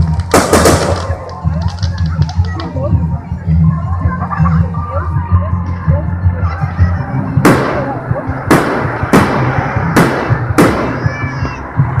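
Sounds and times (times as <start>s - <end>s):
fireworks exploding: 0.0s - 2.4s, 7.4s - 11.6s.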